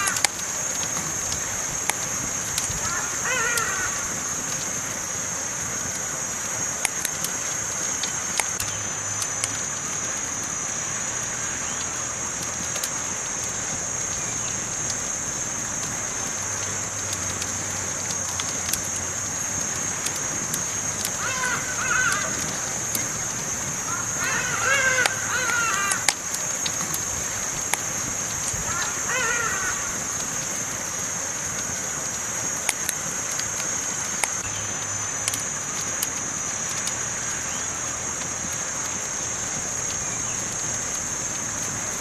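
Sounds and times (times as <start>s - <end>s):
campfire crackling and popping: 0.0s - 42.0s
short wavering calls: 2.8s - 4.4s, 21.1s - 23.2s, 23.8s - 26.1s, 28.6s - 30.1s.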